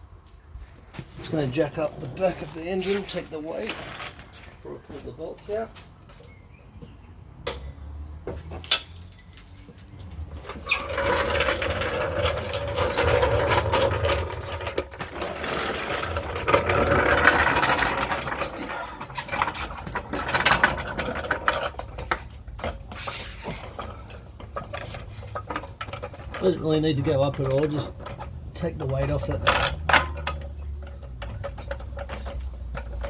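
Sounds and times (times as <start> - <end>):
jack squeaking with whine: 10.4 - 33.0
clicks and knocks: 23.7 - 33.0.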